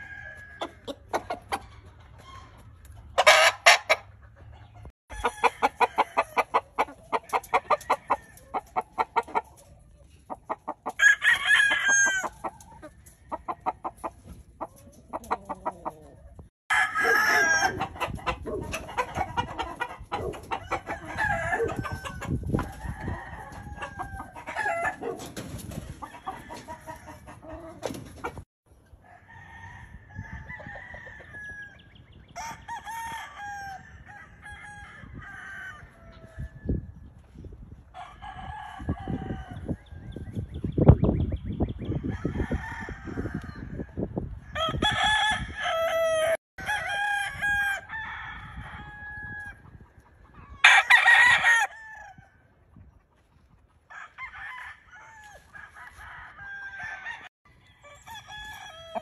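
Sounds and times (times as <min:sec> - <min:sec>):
roosters crowing: 0:00.0 - 0:02.4, 0:03.2 - 0:04.0, 0:05.1 - 0:09.5, 0:10.6 - 0:28.1, 0:28.9 - 0:37.0, 0:37.8 - 0:40.3, 0:41.8 - 0:52.5, 0:53.8 - 0:59.0
chickens clucking: 0:00.0 - 0:29.0, 0:49.6 - 0:50.6, 0:52.4 - 0:53.9.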